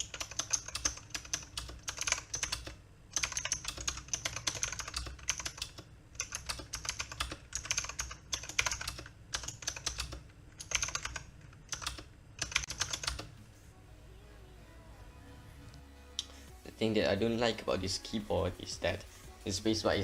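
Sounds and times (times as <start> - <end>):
fast clicky keyboard typing: 0.0 - 13.3.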